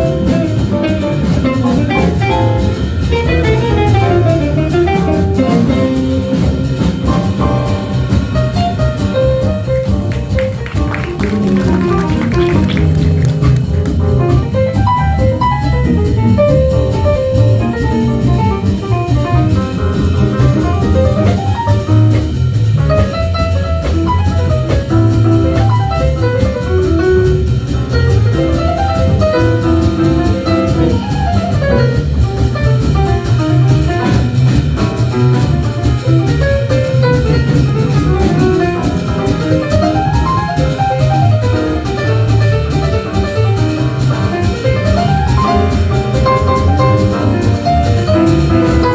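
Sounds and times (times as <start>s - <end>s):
bass: 0.0s - 48.9s
drum kit: 0.0s - 48.9s
lead instrument quick phrases: 0.0s - 48.9s.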